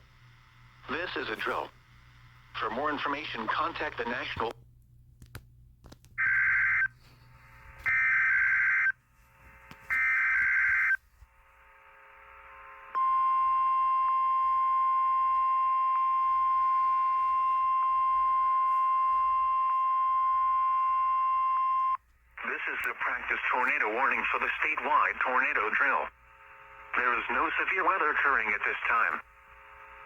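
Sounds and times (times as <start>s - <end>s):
steady warning alarm tone: 9.8s - 11.0s, 13.0s - 22.0s.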